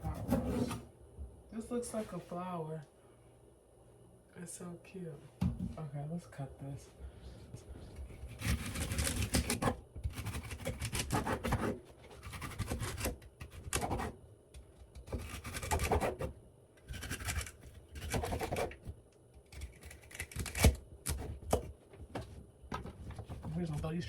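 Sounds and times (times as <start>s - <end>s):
knock on cutting board: 5.4s - 5.8s
knife chopping on cutting board: 8.4s - 14.2s, 15.0s - 16.3s, 16.9s - 18.9s, 20.4s - 23.5s.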